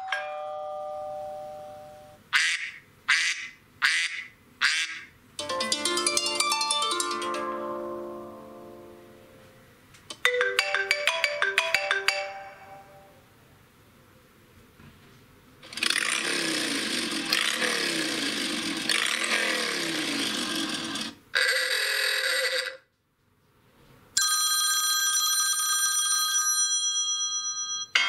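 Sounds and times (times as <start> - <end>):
plucked harp notes: 5.4 - 9.5
motorcycle engine revving: 15.6 - 21.2.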